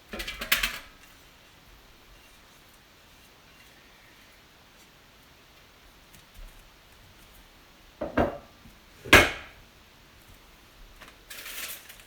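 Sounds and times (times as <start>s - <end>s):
rustling: 10.2s - 12.0s.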